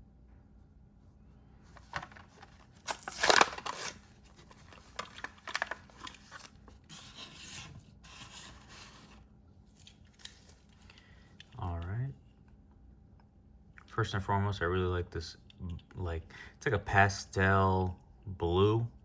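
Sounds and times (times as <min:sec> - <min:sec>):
plastic crackling: 0:01.7 - 0:07.2
cardboard tearing: 0:01.8 - 0:09.2.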